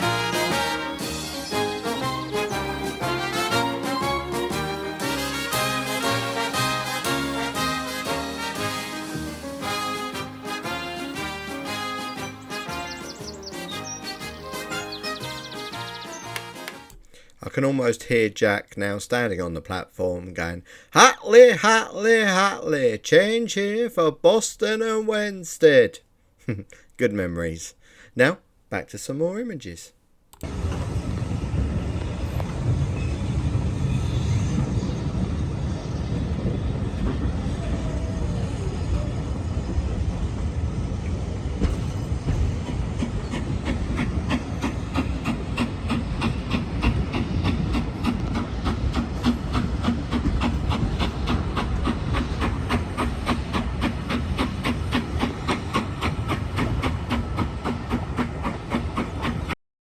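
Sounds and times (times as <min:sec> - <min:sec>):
train rumbling: 0:00.0 - 0:18.3, 0:20.2 - 0:25.6, 0:30.4 - 0:59.6
wheels clicking over rail joints: 0:30.3 - 0:35.3, 0:40.9 - 0:59.6.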